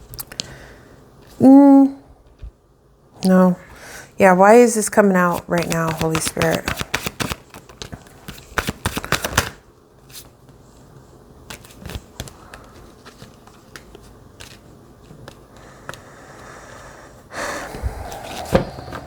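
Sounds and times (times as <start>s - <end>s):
card taps and slides: 5.2s - 9.5s
cards shuffling: 5.2s - 10.6s, 11.4s - 16.0s.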